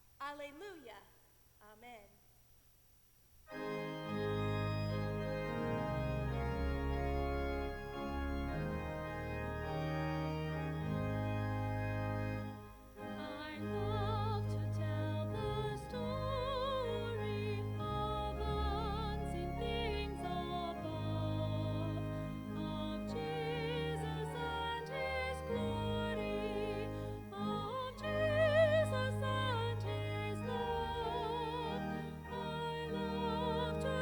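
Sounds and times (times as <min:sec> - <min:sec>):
organ chords: 0:03.5 - 0:34.0
person singing with vibrato: 0:13.0 - 0:34.0.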